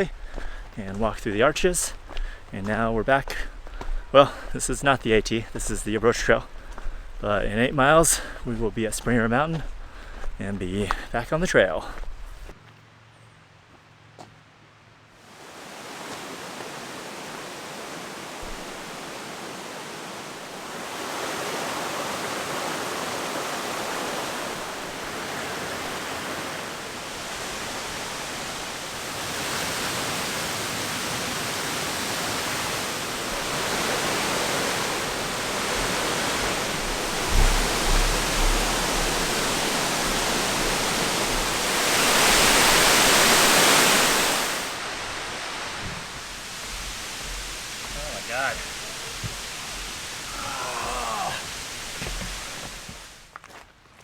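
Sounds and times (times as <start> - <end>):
waterfall rushing: 15.2 - 53.3
low thumps on microphone: 35.6 - 42.9, 45.7 - 50.0.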